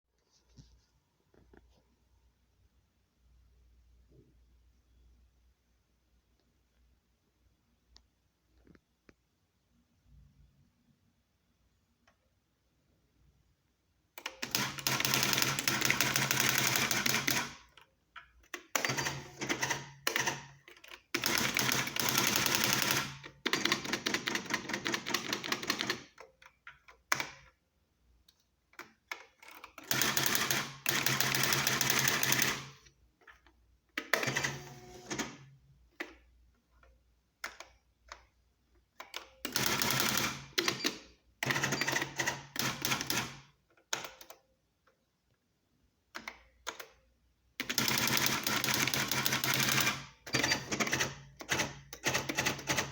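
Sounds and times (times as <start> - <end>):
electronic typewriter typing: 14.2 - 17.8, 18.5 - 26.2, 29.4 - 32.8, 39.1 - 44.3, 47.6 - 52.9.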